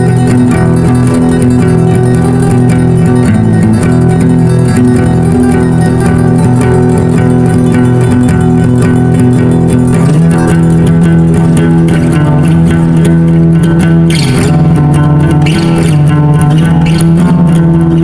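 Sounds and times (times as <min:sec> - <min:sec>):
guitar instrumental music with bass: 0:00.0 - 0:18.0.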